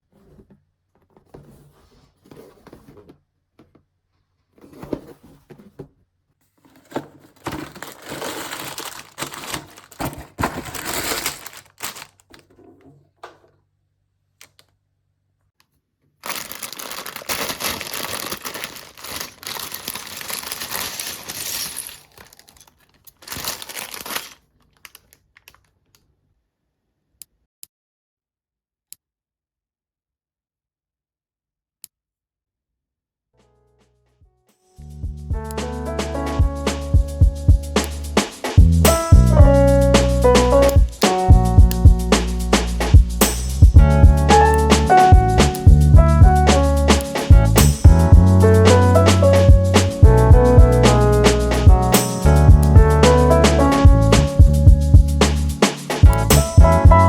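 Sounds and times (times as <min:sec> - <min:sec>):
plastic packaging crinkling and tearing: 0:06.8 - 0:12.4, 0:16.2 - 0:25.9.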